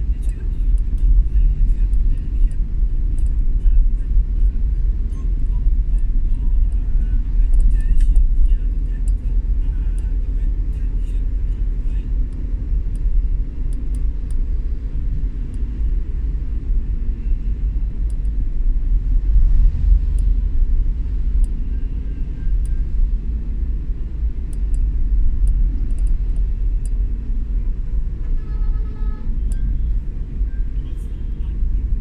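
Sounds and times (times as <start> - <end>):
vehicle road and wind noise: 0.0 - 32.0
faint light ticks: 0.1 - 3.8, 5.9 - 14.5, 18.0 - 18.4, 19.6 - 20.4, 21.0 - 23.1, 24.3 - 27.1, 29.4 - 29.9.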